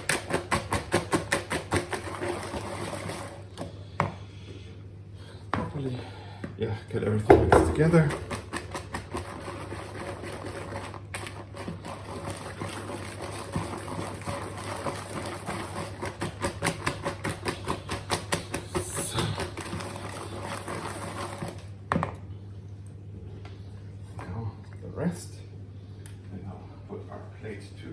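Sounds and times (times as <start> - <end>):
batter stirred by hand: 0.0 - 4.3, 7.3 - 21.8.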